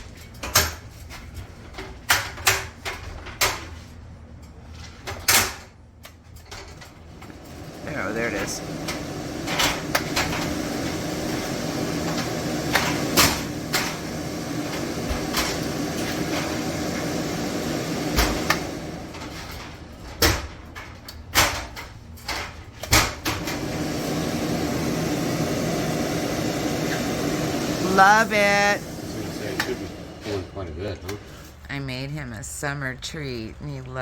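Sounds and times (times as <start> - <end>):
vent hood fan humming: 0.0 - 34.0.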